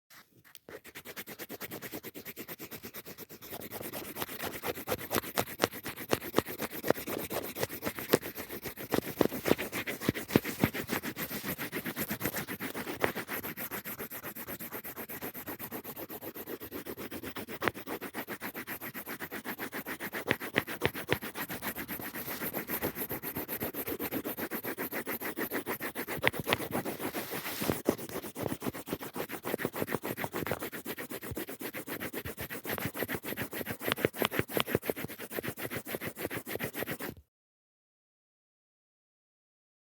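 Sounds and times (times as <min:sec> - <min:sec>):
pencil scratching on paper: 0:00.1 - 0:37.2.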